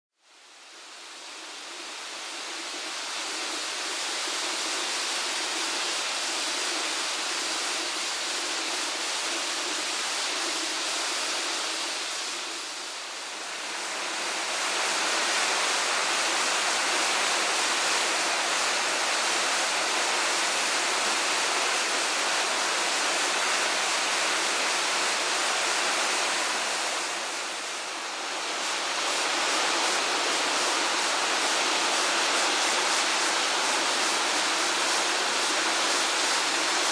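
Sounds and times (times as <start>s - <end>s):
waterfall rushing: 1.0s - 36.9s.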